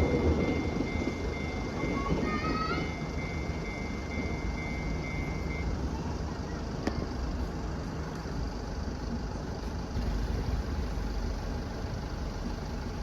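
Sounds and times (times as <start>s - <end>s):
vehicle engine rumble: 3.0s - 13.0s.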